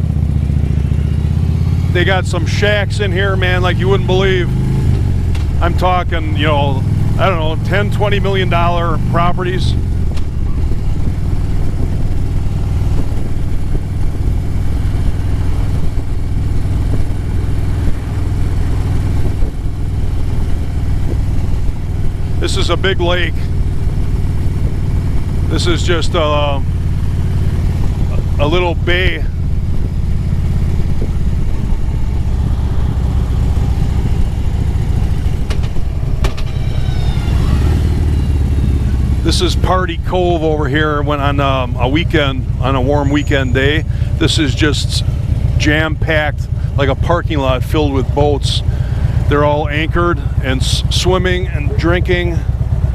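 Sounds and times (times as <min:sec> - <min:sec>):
motorcycle engine running: 0:00.0 - 0:52.9
wind and road noise: 0:00.0 - 0:52.9.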